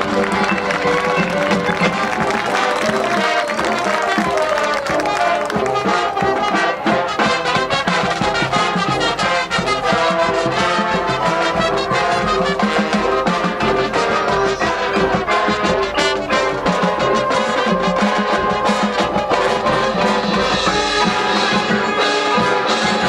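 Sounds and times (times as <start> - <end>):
brass section melody: 0.0 - 23.0
percussion strikes: 0.0 - 23.0.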